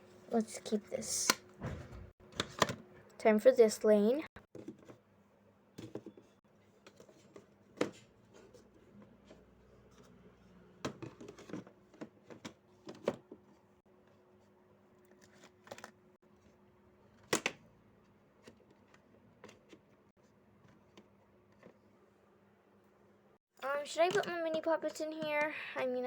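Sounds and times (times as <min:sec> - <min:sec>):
toys clicking and knocking: 0:23.9 - 0:25.5.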